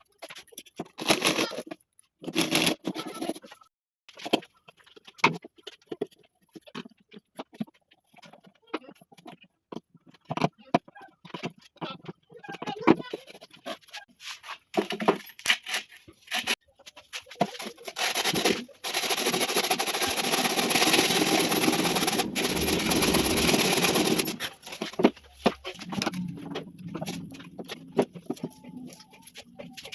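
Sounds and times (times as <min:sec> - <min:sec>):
knocks and clicks: 0:17.4 - 0:29.9
power tool running: 0:18.0 - 0:25.0.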